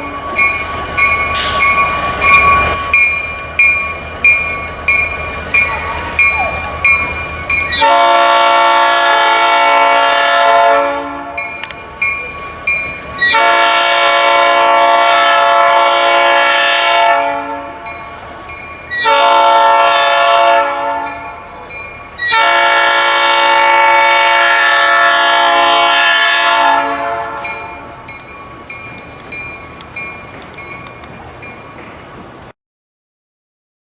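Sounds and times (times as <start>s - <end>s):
train horn blasts: 2.2s - 11.8s, 13.2s - 28.1s.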